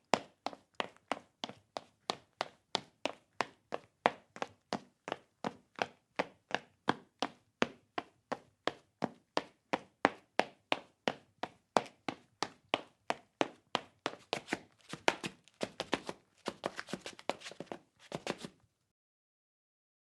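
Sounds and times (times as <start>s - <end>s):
running footsteps on hard floor: 12.1s - 18.6s.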